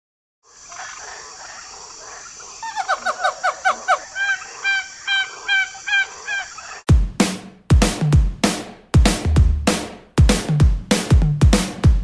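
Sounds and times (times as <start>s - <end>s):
bird calling: 0.5s - 6.9s.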